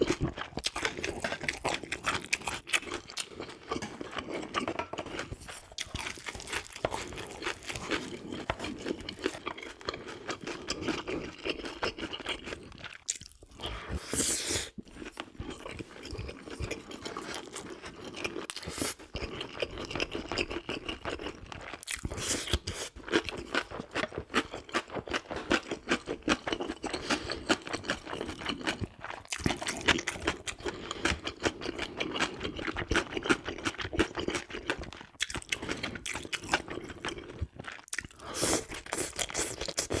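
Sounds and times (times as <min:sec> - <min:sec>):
crunchy chewing: 0:00.0 - 0:14.1.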